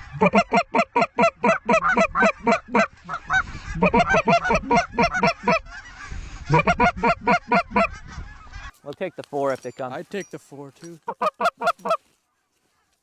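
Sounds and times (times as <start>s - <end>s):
snow goose honking: 0.1s - 5.9s, 11.0s - 12.1s.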